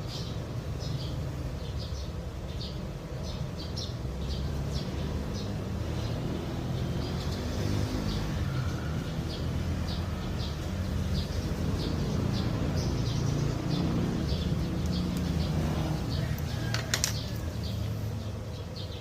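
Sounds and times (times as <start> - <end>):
small bird chirping: 0.0 - 19.0.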